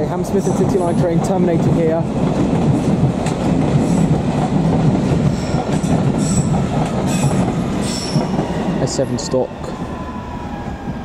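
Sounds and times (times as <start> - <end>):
train wheels rumbling on rails: 0.0 - 11.0
high-pitched brake squeals: 7.1 - 9.4.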